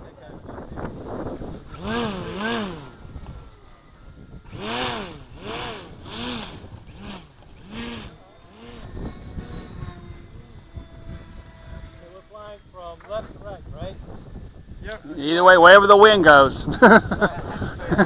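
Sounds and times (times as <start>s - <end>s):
air compressor pumping: 1.6s - 3.4s, 4.4s - 9.5s.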